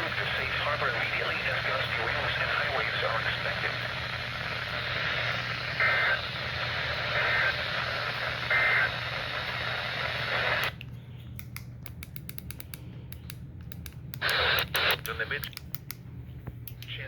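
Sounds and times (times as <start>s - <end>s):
radio hiss: 0.0s - 10.8s, 14.2s - 15.5s.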